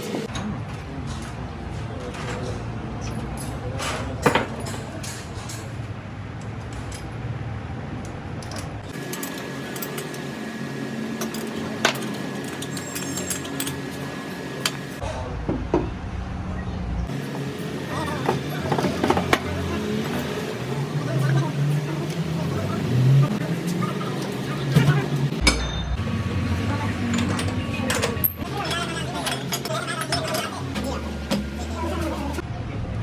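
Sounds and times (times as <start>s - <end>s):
low workshop rumble: 0.0s - 33.0s
metal tools clinking and knocking: 0.3s - 7.3s, 8.4s - 10.4s, 11.2s - 15.0s, 17.4s - 22.2s, 24.2s - 26.0s, 26.6s - 32.4s.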